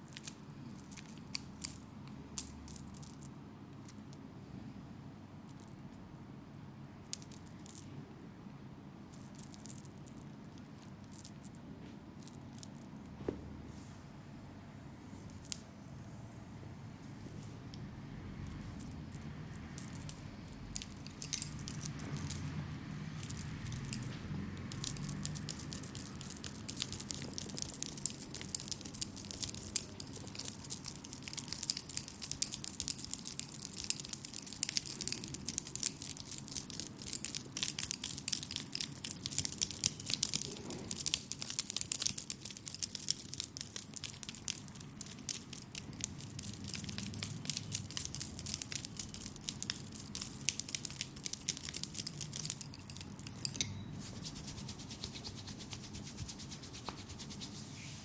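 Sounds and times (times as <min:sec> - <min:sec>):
metallic jingling: 0:18.5 - 0:54.1.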